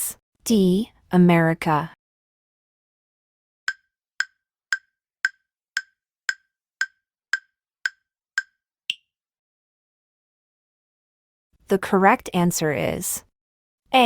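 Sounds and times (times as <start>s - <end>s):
wood-block-like timer ticks: 3.7s - 9.0s.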